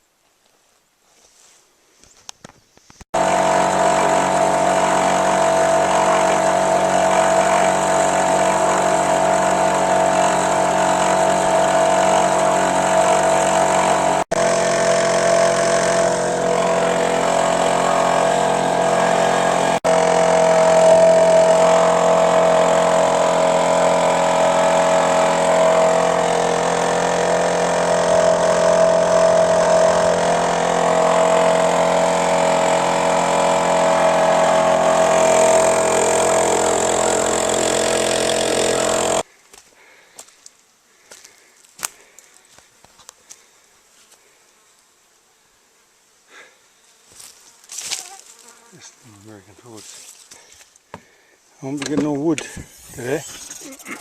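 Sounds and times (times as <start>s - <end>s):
engine running steadily: 3.2s - 39.3s.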